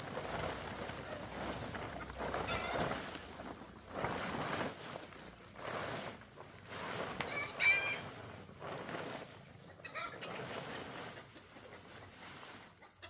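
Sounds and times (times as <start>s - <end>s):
chickens clucking: 2.0s - 3.0s, 7.2s - 8.1s, 9.6s - 13.0s.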